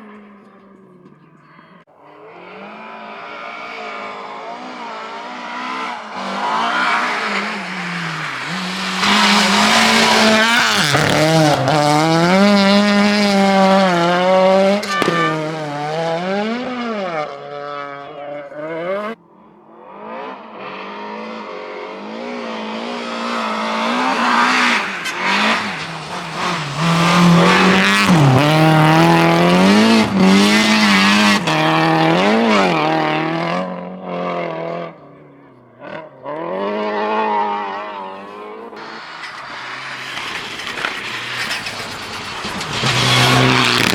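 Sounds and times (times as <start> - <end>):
rally car engines racing: 0.0 - 43.9.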